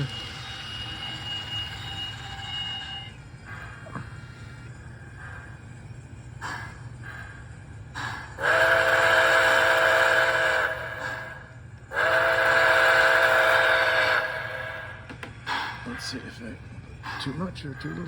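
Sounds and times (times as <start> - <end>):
steam whistle blasts: 0.0 - 3.2, 8.4 - 15.1
steam hissing: 0.0 - 18.0.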